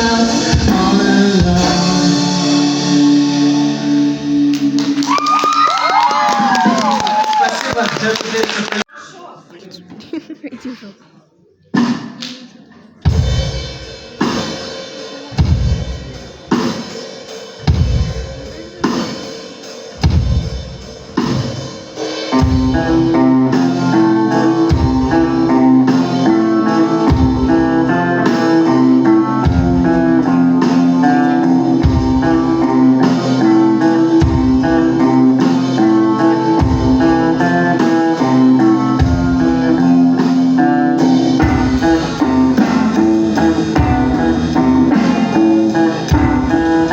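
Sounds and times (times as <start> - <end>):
rock band playing live: 0.0 - 5.2, 13.0 - 46.9.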